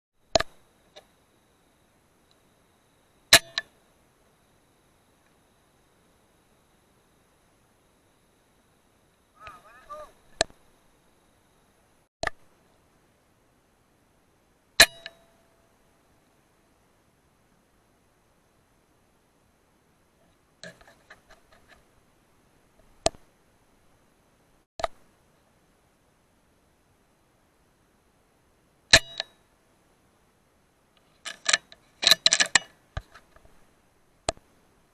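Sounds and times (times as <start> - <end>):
sharp clicks and knocks: 0.3 - 1.1, 31.2 - 33.6.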